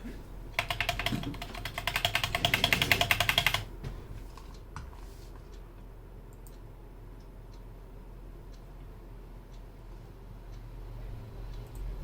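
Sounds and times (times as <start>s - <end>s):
fast typing on keyboard: 0.6s - 3.7s.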